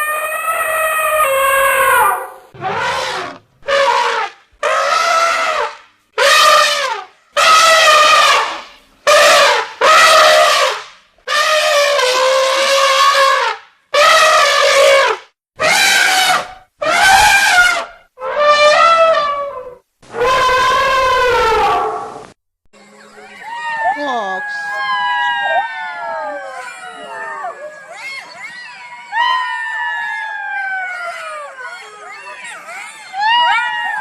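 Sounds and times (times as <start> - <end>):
elephant trumpeting: 0.0 - 22.2.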